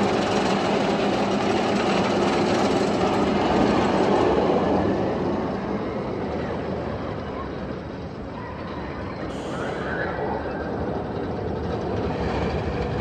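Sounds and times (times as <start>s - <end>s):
heavy engine humming: 5.5s - 13.0s.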